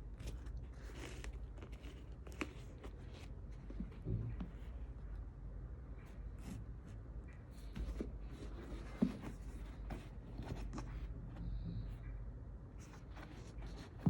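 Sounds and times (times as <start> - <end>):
rustling of packaging: 0.0 - 3.8
steady low hum: 0.0 - 14.0.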